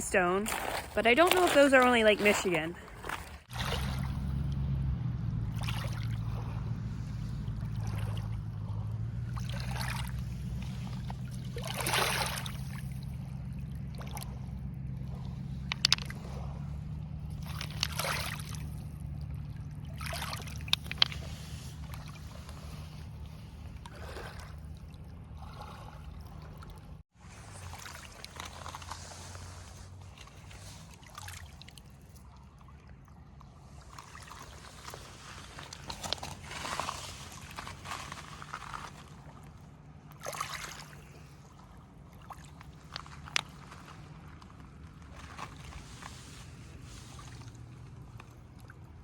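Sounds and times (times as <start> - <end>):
waves lapping on stony shore: 0.0 - 4.4, 5.5 - 49.0
steady low rumble: 2.6 - 30.8.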